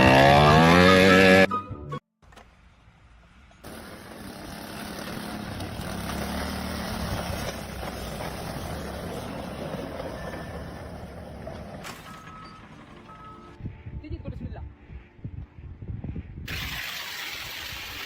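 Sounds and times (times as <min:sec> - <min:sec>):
machine engine rumbling: 0:03.4 - 0:15.9.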